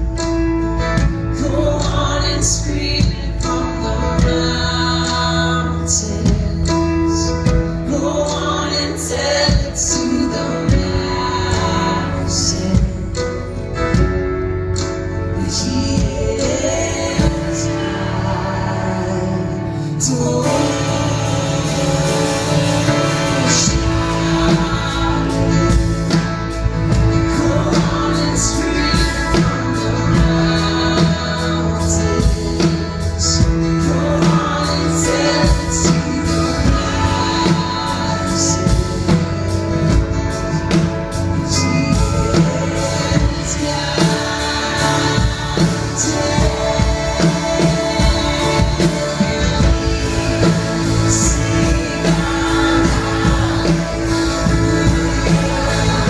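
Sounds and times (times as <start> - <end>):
person singing: 0.0 - 56.0
worship band playing: 0.0 - 56.0
drum and cymbal hits: 20.4 - 56.0.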